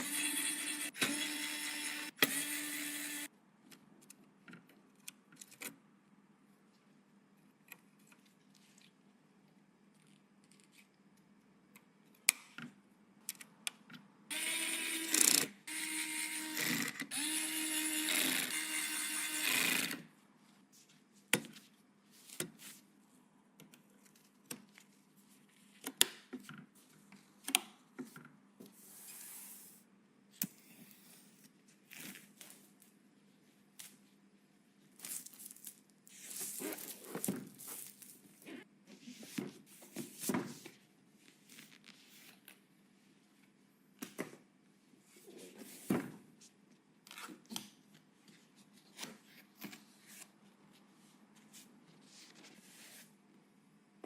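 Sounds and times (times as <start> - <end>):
electric screwdriver whirring: 0.0 - 3.3, 14.3 - 20.0.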